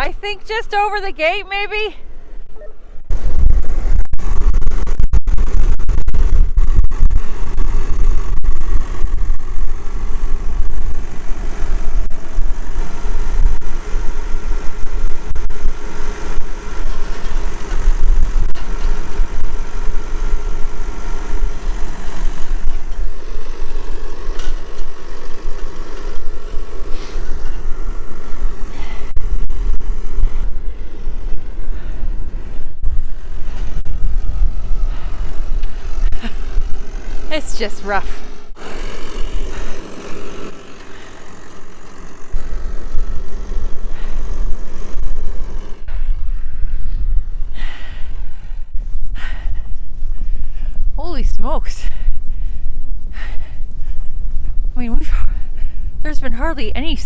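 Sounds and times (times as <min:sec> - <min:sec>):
tractor engine running: 0:00.0 - 0:57.0
wind buffeting microphone: 0:03.0 - 0:40.2, 0:41.3 - 0:57.0.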